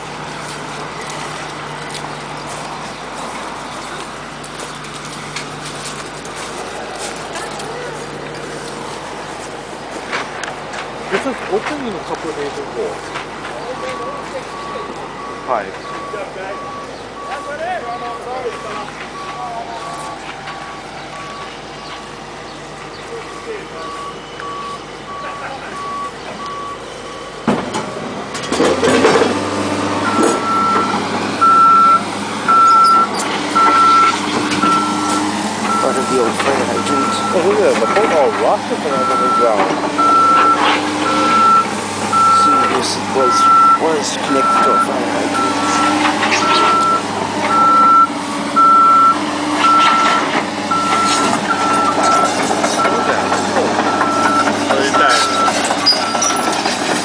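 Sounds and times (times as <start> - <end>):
diesel engine running low: 0.0 - 57.0
backup alarm beeping: 12.5 - 28.2, 28.9 - 56.6.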